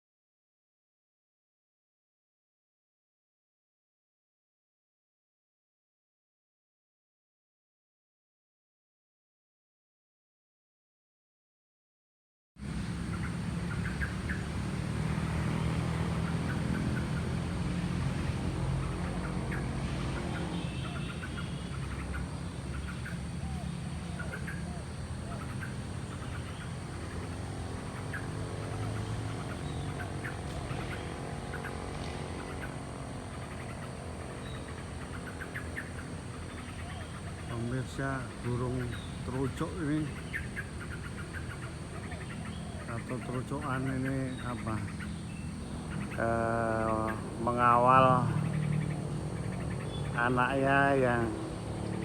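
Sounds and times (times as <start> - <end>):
birds chirping: 12.6 - 52.0
vehicle engine rumble: 12.6 - 52.0.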